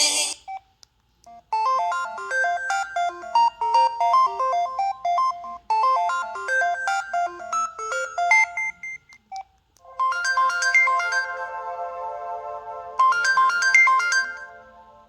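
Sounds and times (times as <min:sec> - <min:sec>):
fast ringtone melody: 0:01.5 - 0:09.0, 0:09.9 - 0:11.7, 0:13.0 - 0:14.7
ringtone of long held notes: 0:01.5 - 0:09.0, 0:09.8 - 0:15.0.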